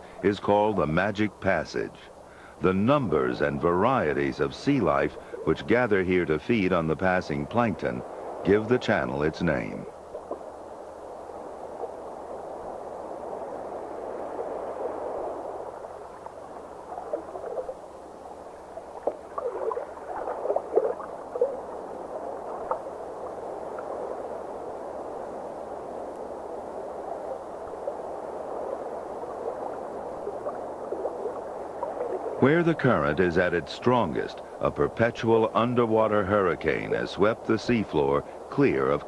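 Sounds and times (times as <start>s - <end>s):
underwater rushing current: 9.4s - 33.1s
bubbling gurgles: 14.7s - 24.1s.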